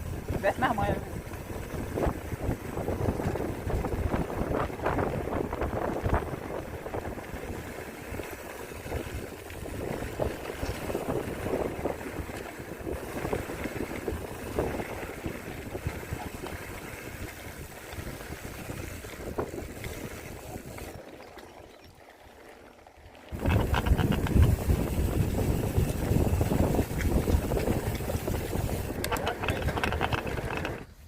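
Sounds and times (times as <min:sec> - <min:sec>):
wind buffeting microphone: 0:00.0 - 0:21.0, 0:23.3 - 0:31.0
mountain bike rattling on trail: 0:00.0 - 0:21.2, 0:22.0 - 0:31.0.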